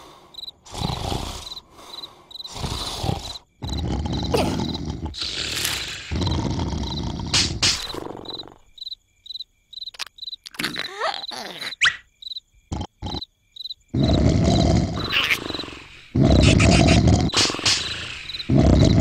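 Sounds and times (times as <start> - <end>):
insect chirping: 0.0 - 19.0
person snoring loudly: 0.6 - 8.6, 13.9 - 19.0.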